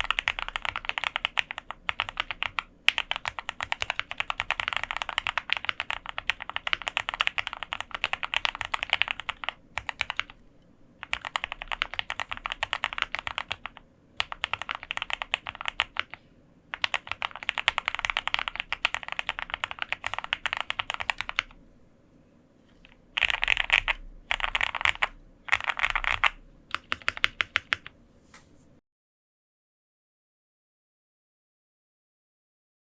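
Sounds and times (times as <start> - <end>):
fast typing on mechanical keyboard: 0.0 - 10.4, 11.0 - 21.6, 22.8 - 28.0.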